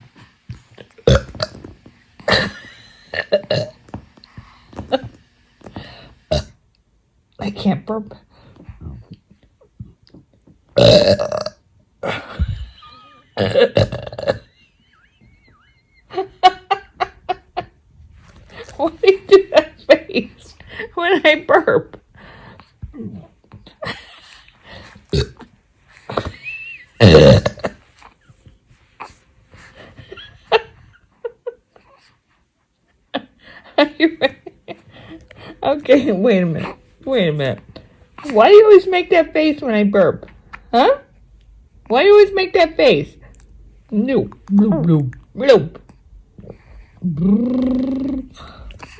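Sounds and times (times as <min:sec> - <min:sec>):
woman burping: 0:01.0 - 0:01.6, 0:02.3 - 0:03.8, 0:06.3 - 0:06.6, 0:10.8 - 0:14.6, 0:25.1 - 0:25.5, 0:26.1 - 0:27.8.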